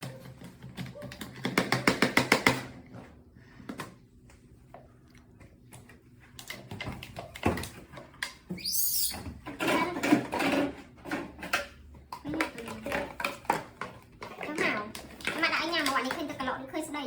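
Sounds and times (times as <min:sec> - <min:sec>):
monkey squealing: 0:08.5 - 0:09.3.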